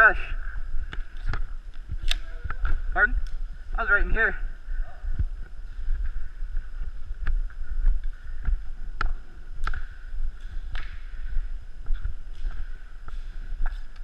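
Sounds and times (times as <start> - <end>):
sharp clicks and snaps: 0.9 - 3.4, 9.0 - 11.1.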